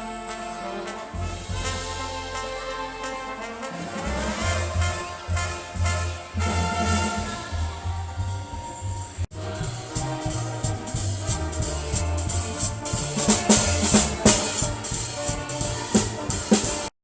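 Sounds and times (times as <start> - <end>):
drum kit with cymbals: 0.0 - 17.0
double bass plucking low notes: 4.2 - 16.9.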